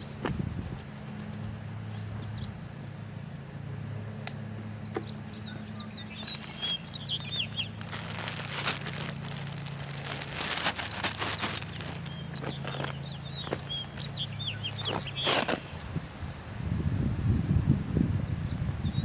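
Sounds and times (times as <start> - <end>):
bird chirping: 0.0 - 3.9, 4.6 - 8.5, 10.7 - 15.9
gritty asphalt patch crackling: 0.0 - 16.2.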